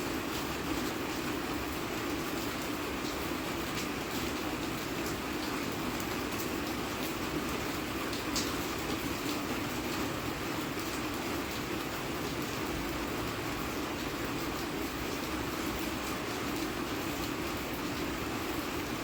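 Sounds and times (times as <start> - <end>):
steady rain hiss: 0.0 - 19.0
raindrop ticks: 8.1 - 9.4.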